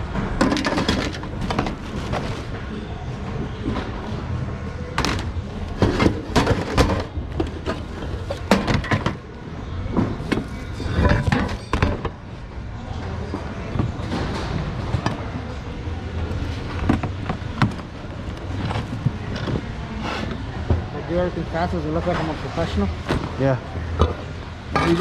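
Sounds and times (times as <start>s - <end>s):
hard objects clattering in bin: 0.2s - 2.5s, 5.0s - 9.2s, 10.0s - 12.2s.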